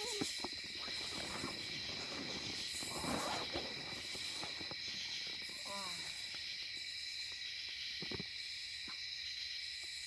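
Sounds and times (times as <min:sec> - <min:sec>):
night insects trilling: 0:00.0 - 0:10.0
soft rustle: 0:00.2 - 0:05.5.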